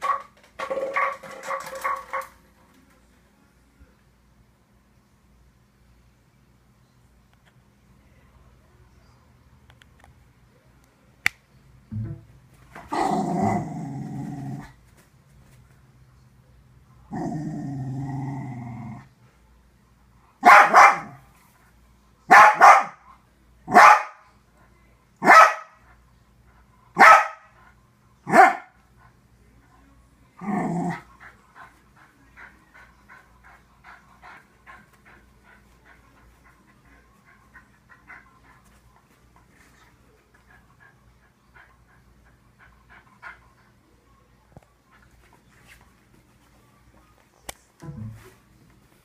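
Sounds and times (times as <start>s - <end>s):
dog growling: 12.9s - 14.8s, 17.1s - 19.1s, 30.4s - 31.1s
dog barking: 20.4s - 21.2s, 22.3s - 23.0s, 23.7s - 24.2s, 25.2s - 25.8s, 27.0s - 27.5s, 28.3s - 28.8s.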